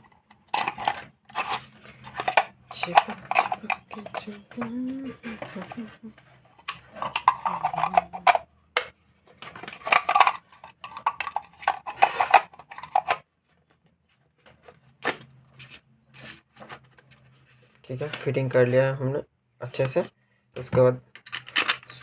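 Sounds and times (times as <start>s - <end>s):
clatter of parts being handled: 9.4s - 13.2s.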